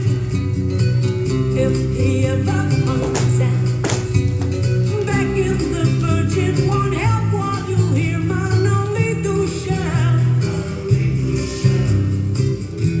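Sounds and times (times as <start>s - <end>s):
guitar over bass beat: 0.0s - 13.0s
person singing: 1.6s - 4.2s.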